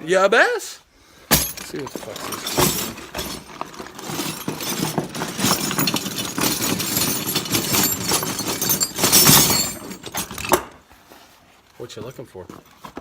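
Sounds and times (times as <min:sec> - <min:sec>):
metal tools clattering: 0:01.3 - 0:10.8.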